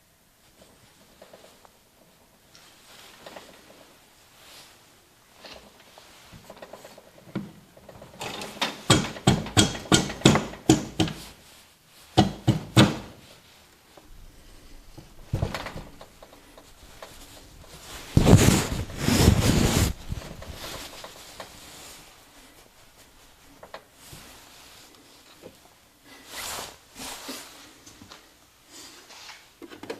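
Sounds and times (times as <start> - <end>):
rough rubbing or scraping: 15.1 - 24.9.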